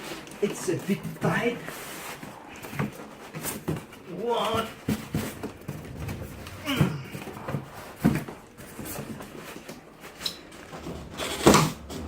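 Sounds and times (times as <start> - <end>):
cardboard box knocks and scrapes: 4.6 - 9.6.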